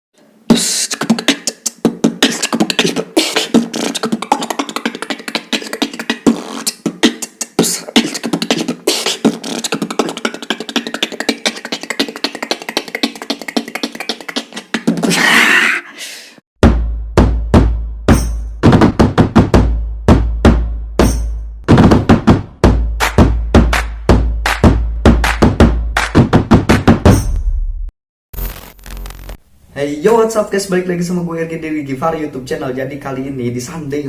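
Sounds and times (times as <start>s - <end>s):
beatboxing clicks and mouth percussion: 0.5s - 15.4s
beatbox hiss: 0.5s - 15.6s.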